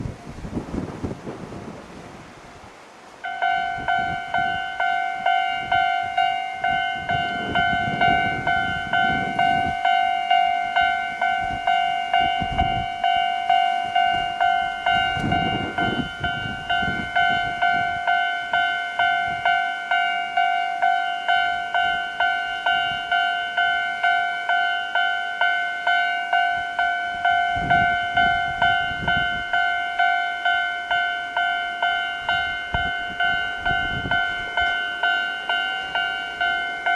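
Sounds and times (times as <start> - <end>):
wind rumbling on microphone: 0.0 - 2.8, 3.6 - 19.6, 26.5 - 29.9, 31.8 - 35.1
level-crossing alarm dinging: 3.2 - 36.9.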